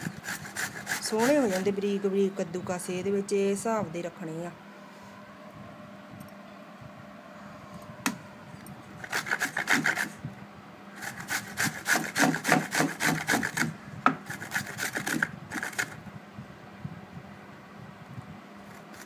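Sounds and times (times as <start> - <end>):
mango rasping on a grater: 0.0 - 1.9, 9.0 - 10.2, 11.0 - 16.0, 18.6 - 19.0.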